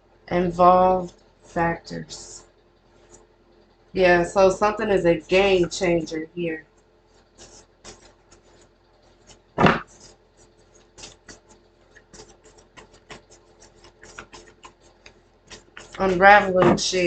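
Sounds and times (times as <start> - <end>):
louder knock: 9.6 - 9.8.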